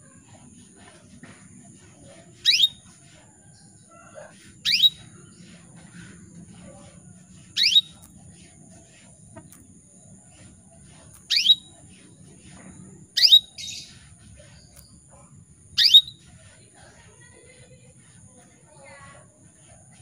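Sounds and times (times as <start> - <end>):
canary rising calls: 2.4 - 2.8, 4.4 - 5.3, 7.5 - 8.1, 11.3 - 11.8, 13.2 - 14.0, 15.8 - 16.3.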